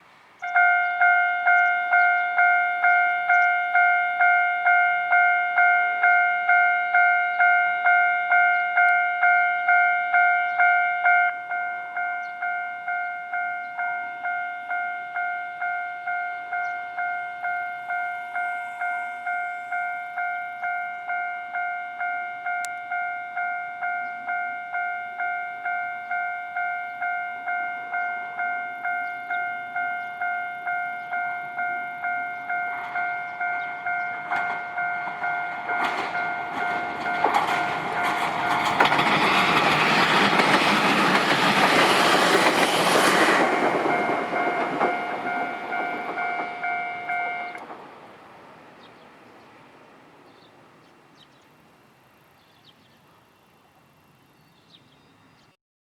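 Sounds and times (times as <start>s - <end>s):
level crossing bell ringing: 0.6s - 39.2s, 43.7s - 47.6s.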